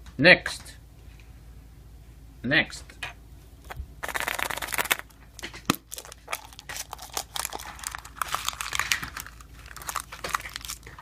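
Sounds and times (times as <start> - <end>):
wrapper crinkling and tearing: 4.0 - 11.0.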